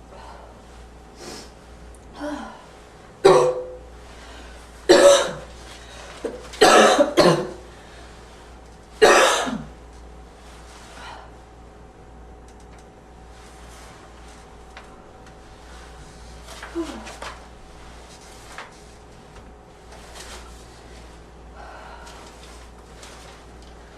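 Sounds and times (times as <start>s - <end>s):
person coughing: 3.2s - 3.8s, 4.9s - 5.5s, 6.2s - 7.7s, 9.0s - 9.7s.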